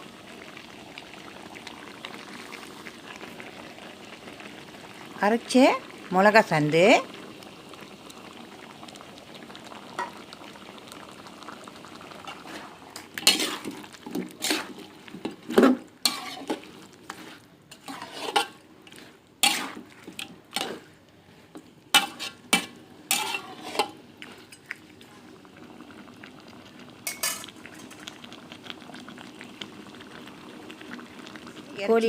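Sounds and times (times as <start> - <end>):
curry simmering in a pot: 0.0 - 32.0
spoon scraping and clinking pot: 13.0 - 13.8, 14.4 - 14.8, 15.5 - 18.6, 19.4 - 20.8, 22.0 - 24.6, 27.1 - 28.0.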